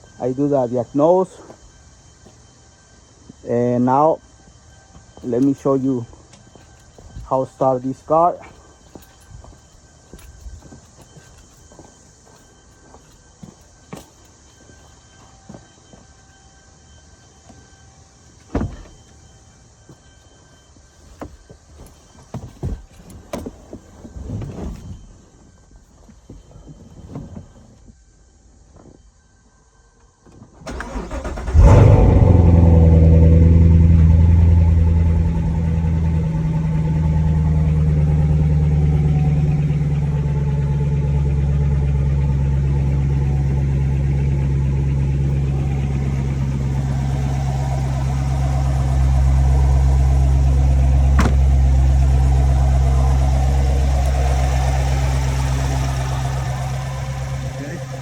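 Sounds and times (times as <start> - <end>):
car engine starting and idling: 30.6 - 58.0.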